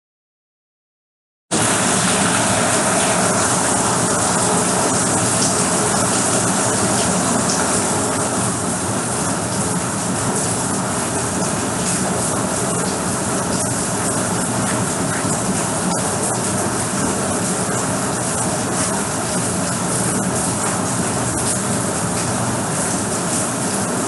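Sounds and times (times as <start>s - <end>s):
heavy rain hissing: 1.6s - 24.0s
raindrops ticking: 11.4s - 23.6s.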